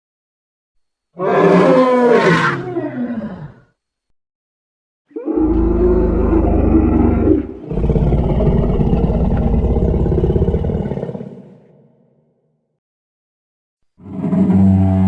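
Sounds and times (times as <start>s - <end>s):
deep low dinosaur calls: 5.1s - 11.8s.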